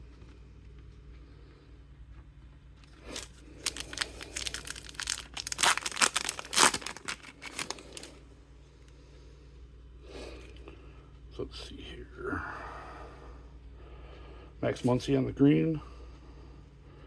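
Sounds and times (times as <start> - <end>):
card pack wrapper tearing: 2.9 - 8.2.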